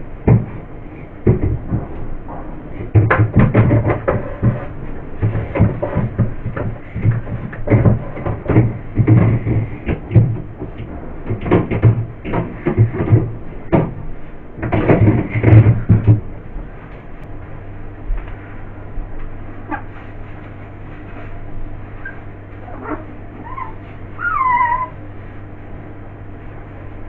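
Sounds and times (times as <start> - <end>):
fridge shelves knocking and clattering: 0.0 - 17.2
rubbing while wiping: 19.5 - 25.6.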